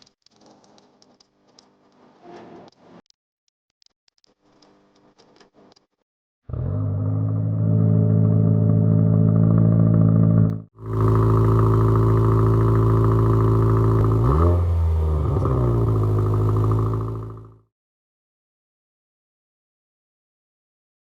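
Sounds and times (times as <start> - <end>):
car engine exhaust note: 6.5 - 17.6.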